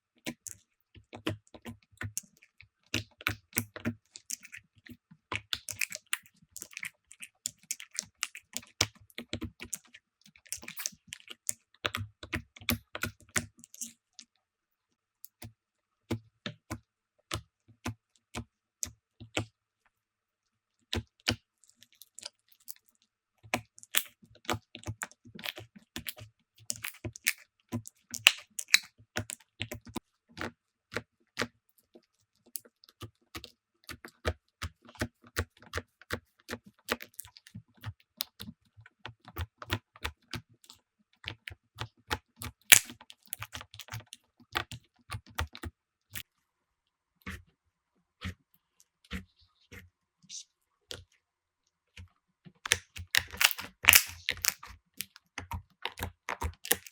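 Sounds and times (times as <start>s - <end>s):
slime sticky clicks and pops: 42.7s - 43.5s, 52.7s - 54.7s, 55.4s - 56.9s.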